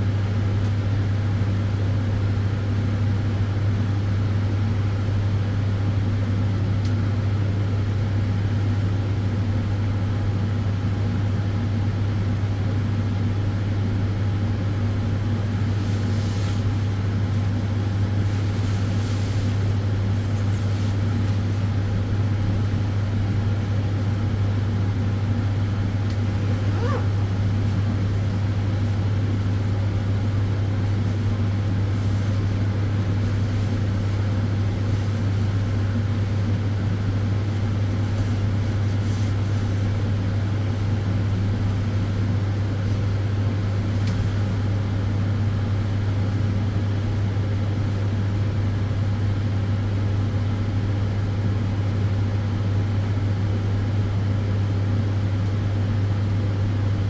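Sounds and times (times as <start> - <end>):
cooling fans whooshing: 0.0 - 51.1
low electrical hum: 0.0 - 57.0.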